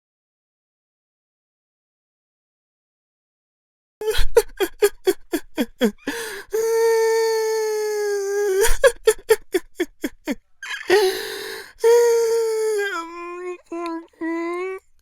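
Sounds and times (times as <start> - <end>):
man sobbing and wailing: 4.0 - 14.8.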